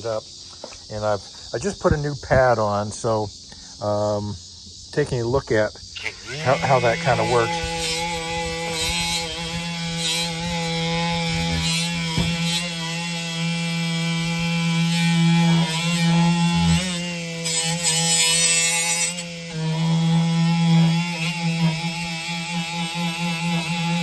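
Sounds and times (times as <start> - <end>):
abrasive pad rasping on metal: 6.0 - 24.0
die grinder motor whine: 6.0 - 24.0.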